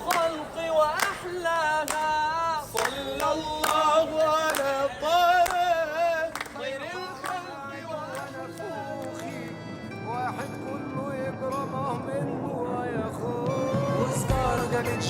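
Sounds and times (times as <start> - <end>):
sharp clicks or claps: 0.0 - 7.5.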